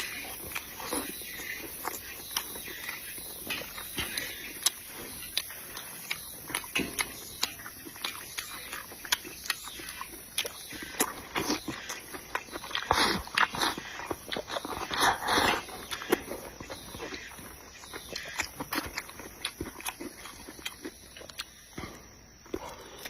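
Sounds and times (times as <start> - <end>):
sharp wet clicks: 0.0 - 21.7
chewing and lip smacking: 0.0 - 21.8.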